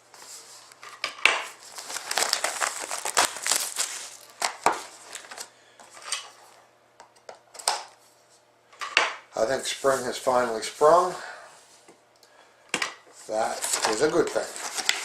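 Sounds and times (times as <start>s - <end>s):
cardboard rustling: 0.2s - 6.1s, 13.3s - 15.0s
plastic wrapping crinkling: 1.5s - 5.5s, 13.3s - 15.0s.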